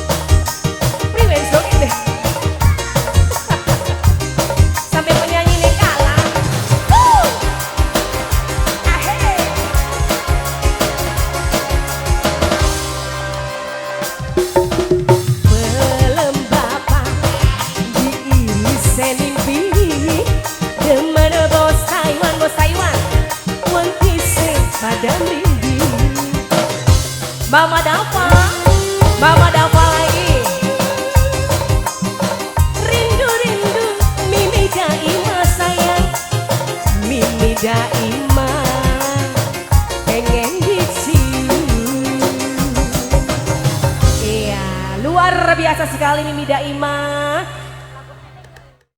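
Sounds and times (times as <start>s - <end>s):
drums and bass beat: 0.0s - 44.9s
ornamented melody line: 0.0s - 48.4s.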